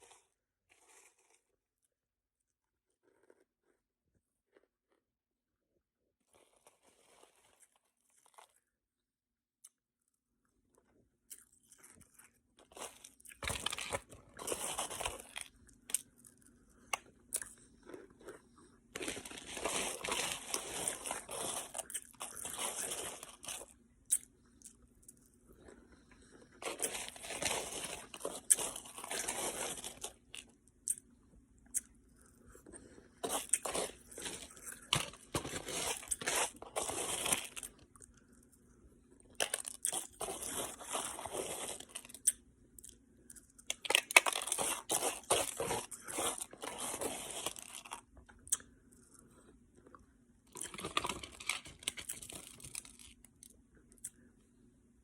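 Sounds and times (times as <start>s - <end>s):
person crunching ice: 11.3s - 18.4s, 19.0s - 24.3s, 26.6s - 31.0s, 33.2s - 38.1s, 39.3s - 43.0s, 43.6s - 48.6s, 50.5s - 53.5s.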